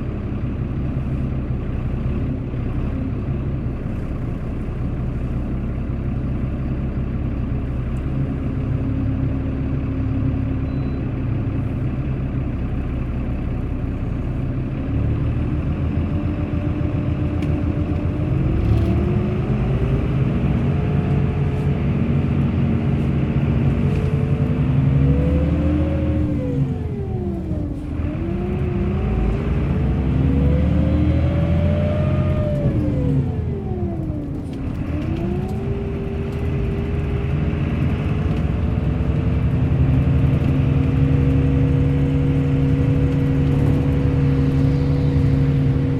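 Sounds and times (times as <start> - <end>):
bus engine rumbling: 0.0 - 45.9.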